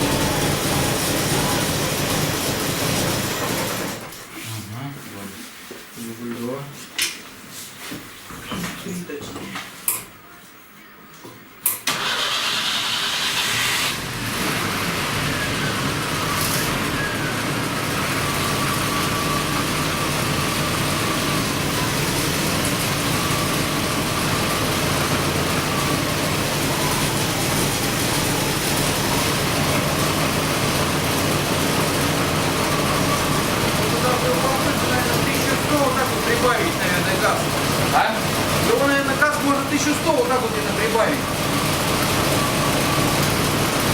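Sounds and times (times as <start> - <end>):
engine idling: 0.0 - 4.0, 11.9 - 43.9
starter cranking engine: 11.9 - 43.9.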